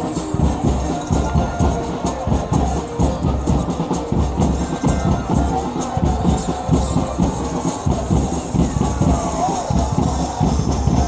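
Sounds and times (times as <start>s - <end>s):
drums beating a steady rhythm: 0.0s - 11.0s
stadium crowd hubbub: 0.0s - 11.0s.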